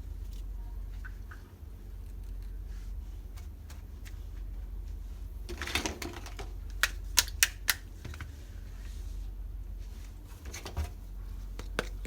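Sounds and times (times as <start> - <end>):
toy kitchen pieces clicking: 5.5 - 7.9.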